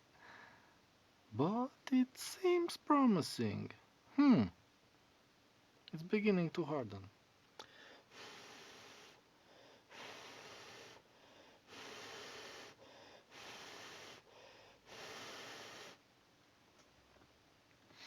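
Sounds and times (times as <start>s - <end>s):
person breathing close to microphone: 0.2s - 0.8s, 7.6s - 16.0s.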